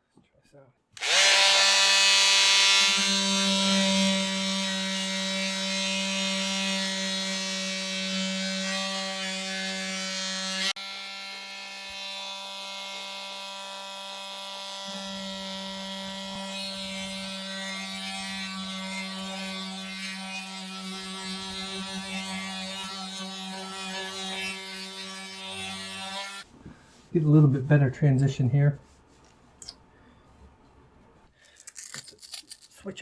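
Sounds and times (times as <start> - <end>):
oscillating multi-tool sanding wood: 1.0 - 26.5.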